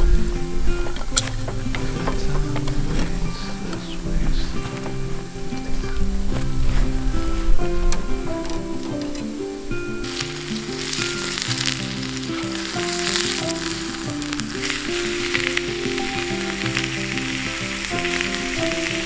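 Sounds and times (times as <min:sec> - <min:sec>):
background music: 0:00.0 - 0:19.0
steak sizzling in a skillet: 0:04.8 - 0:19.0.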